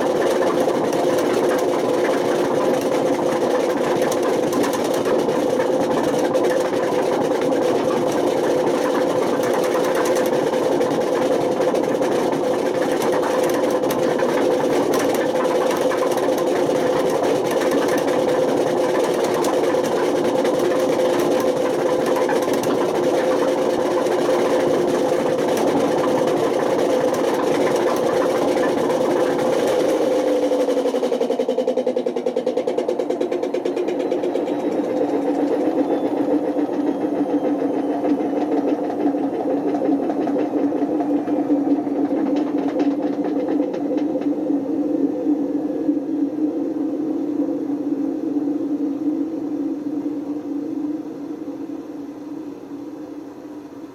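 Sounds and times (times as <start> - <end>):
fast rattling clicks: 0.0 - 44.4
washing machine drone: 0.0 - 53.9.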